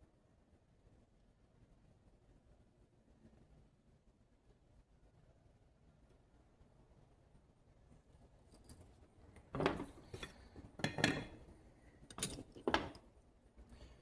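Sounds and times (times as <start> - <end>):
metal tools clinking: 9.6 - 11.5, 12.1 - 13.0.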